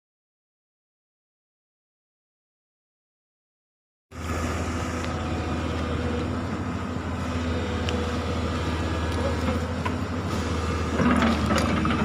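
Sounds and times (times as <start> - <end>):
diesel engine running: 4.1 - 12.0.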